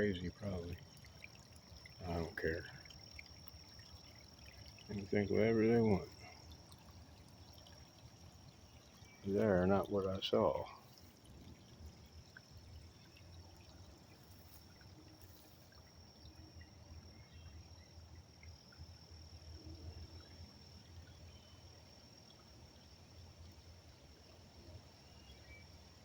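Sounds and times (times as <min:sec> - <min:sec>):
creek water trickling: 0:00.0 - 0:26.0
high insect drone: 0:00.0 - 0:26.0.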